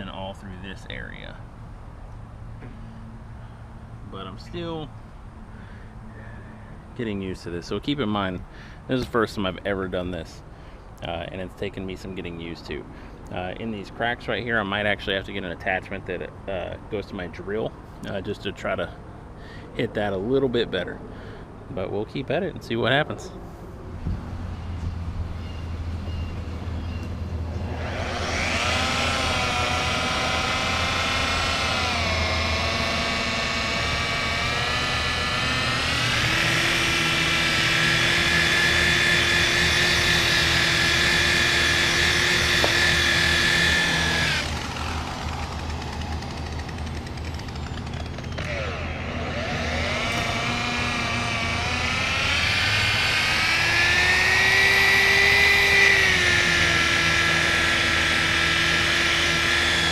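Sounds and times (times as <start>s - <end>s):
polisher motor whine: 27.4s - 46.7s, 47.4s - 59.9s.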